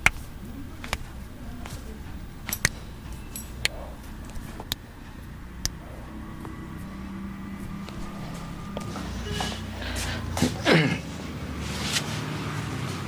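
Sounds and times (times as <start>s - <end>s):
joints cracking: 0.0s - 6.9s
steady low hum: 0.0s - 12.3s.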